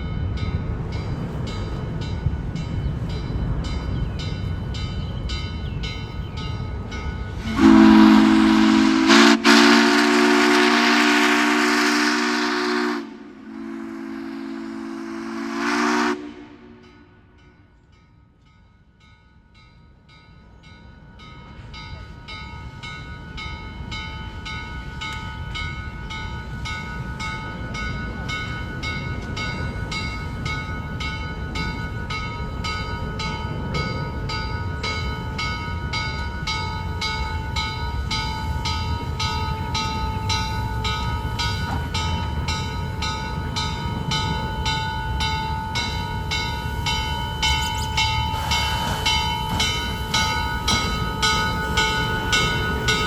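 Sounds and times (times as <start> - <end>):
train clattering on tracks: 0.0 - 53.0
steam locomotive whistle: 7.4 - 17.4
steam hissing: 36.5 - 53.0.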